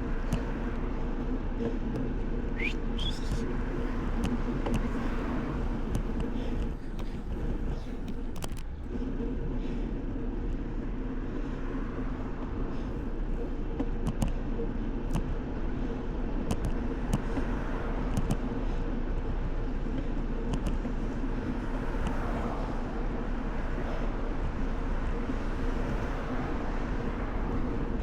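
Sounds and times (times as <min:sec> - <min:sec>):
wind rushing over microphone: 0:00.0 - 0:19.8, 0:20.4 - 0:28.0
tyres humming on road: 0:00.0 - 0:28.0
bike clicks and rattles: 0:05.7 - 0:08.9, 0:16.4 - 0:17.5.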